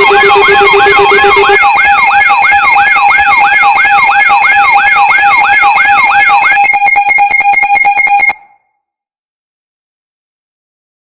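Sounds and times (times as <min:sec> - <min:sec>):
pulsing alarm tones: 0:00.0 - 0:08.4
electronic siren yelping: 0:00.0 - 0:08.5.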